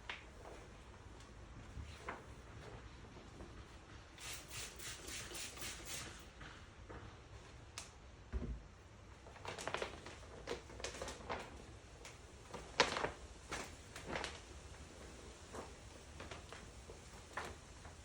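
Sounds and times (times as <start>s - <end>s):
paper backing rustling: 9.2s - 11.7s.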